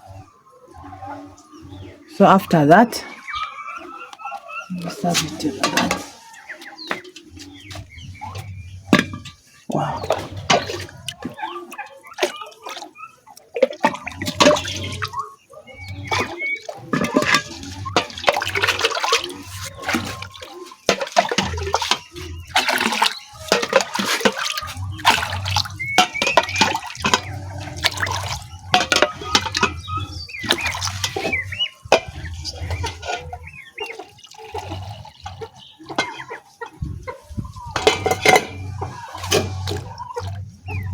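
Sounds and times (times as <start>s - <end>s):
clatter of handled vessels: 1.7s - 40.9s
liquid pouring and splashing: 7.8s - 15.2s, 15.8s - 36.9s, 37.6s - 40.9s.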